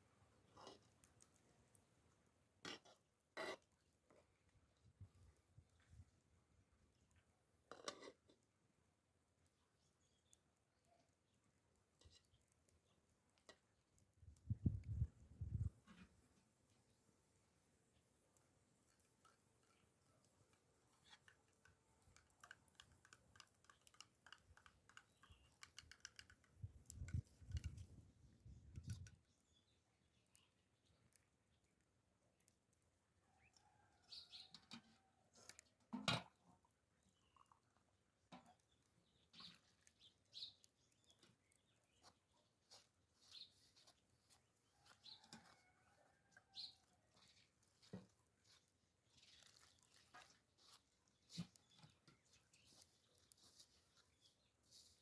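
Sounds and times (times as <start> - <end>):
faint light clicks and taps: 18.3 - 27.9.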